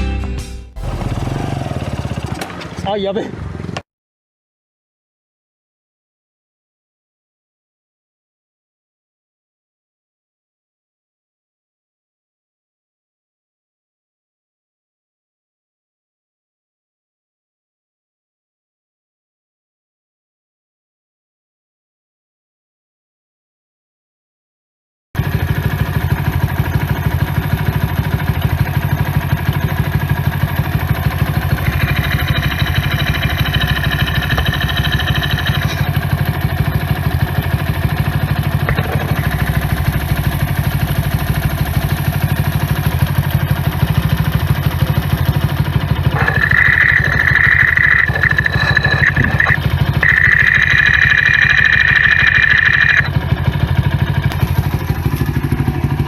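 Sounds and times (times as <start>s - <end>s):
small motorcycle engine running: 0.8s - 3.8s, 25.2s - 56.0s
high-pitched whine: 28.6s - 45.3s, 46.0s - 53.2s.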